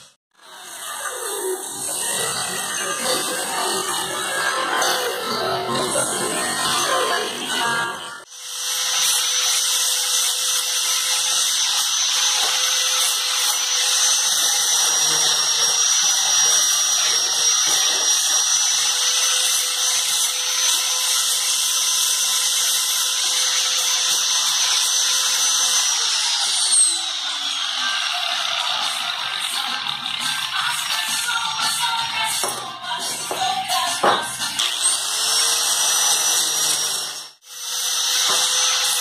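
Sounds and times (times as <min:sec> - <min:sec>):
power tool motor whining: 0:08.2 - 0:30.2, 0:34.5 - 0:39.0.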